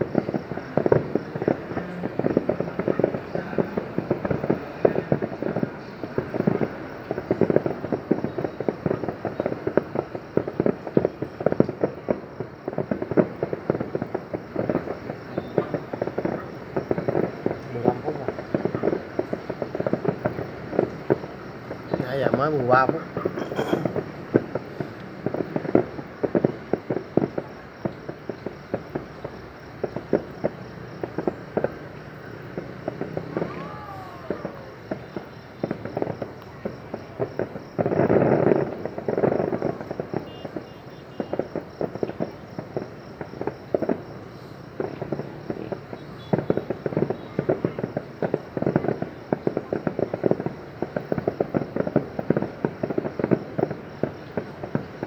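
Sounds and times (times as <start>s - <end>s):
fireworks crackling pops: 0.0s - 55.0s.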